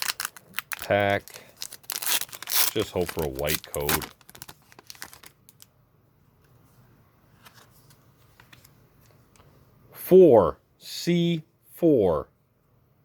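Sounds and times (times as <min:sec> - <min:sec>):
trading cards being leafed through: 0:00.0 - 0:05.4.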